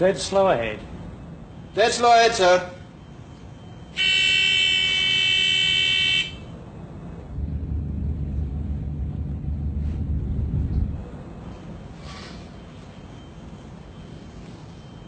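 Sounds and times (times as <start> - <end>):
telegraph buzzer: 3.9 - 6.5
ship engine rumble: 6.6 - 12.0.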